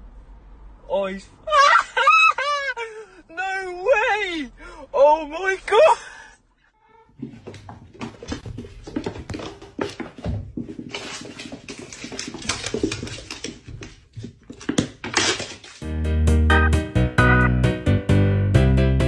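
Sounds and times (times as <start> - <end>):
music: 15.8 - 19.0
loud tune: 15.9 - 19.0.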